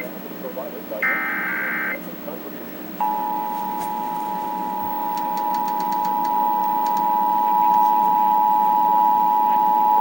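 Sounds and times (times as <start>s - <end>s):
dual-tone alarm: 1.0s - 2.0s, 3.0s - 10.0s.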